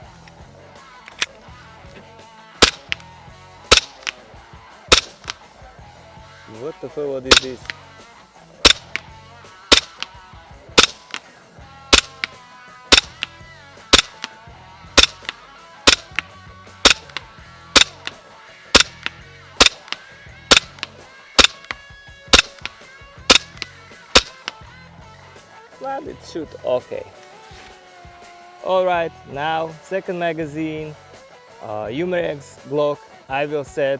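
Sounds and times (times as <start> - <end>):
airsoft pistol shots: 2.6 - 3.0, 3.7 - 4.1, 4.9 - 5.4, 7.3 - 7.7, 8.7 - 9.0, 9.7 - 10.1, 10.8 - 11.2, 12.0 - 12.3, 12.9 - 13.3, 14.0 - 14.3, 15.0 - 15.3, 15.9 - 16.2, 16.9 - 17.2, 17.8 - 18.1, 18.8 - 21.8, 22.4 - 22.7, 23.3 - 23.6, 24.2 - 24.5.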